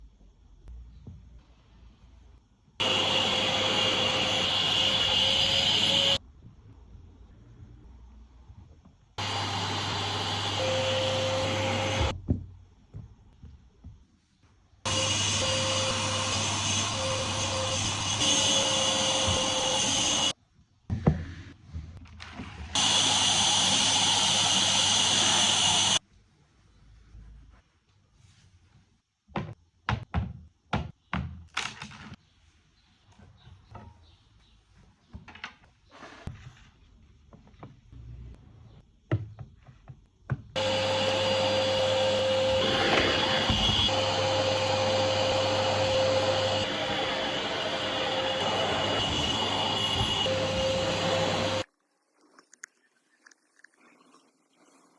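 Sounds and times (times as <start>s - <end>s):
vacuum cleaner running: 2.8s - 6.2s, 9.2s - 12.2s, 14.9s - 20.3s, 22.8s - 26.0s, 40.6s - 51.7s.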